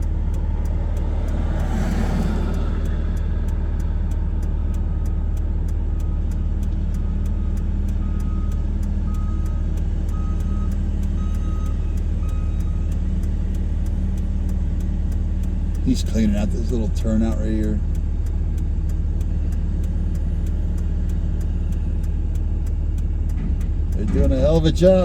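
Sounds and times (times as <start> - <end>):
engine idling: 0.0 - 25.0
back-up alarm beeping: 8.0 - 12.9.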